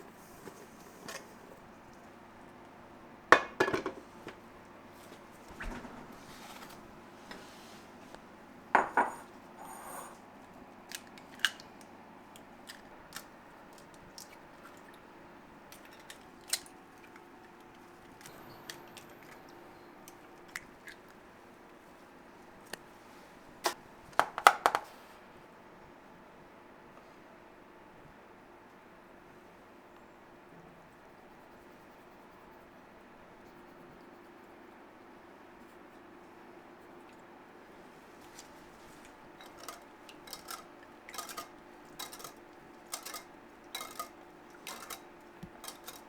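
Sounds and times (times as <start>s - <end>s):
faint steady hum: 0.0s - 46.0s
utensils and metal pans clinking: 38.9s - 46.0s.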